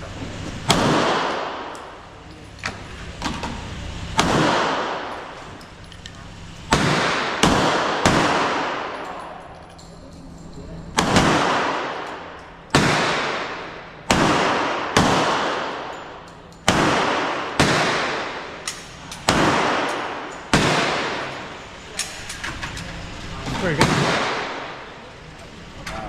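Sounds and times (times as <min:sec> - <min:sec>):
gunshots echoing: 0:00.6 - 0:02.2, 0:04.1 - 0:05.6, 0:06.4 - 0:09.4, 0:11.0 - 0:22.5, 0:23.6 - 0:25.1.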